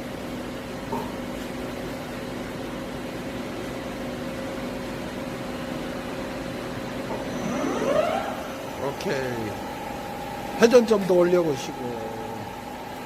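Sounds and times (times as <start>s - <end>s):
lathe humming: 6.8s - 13.0s.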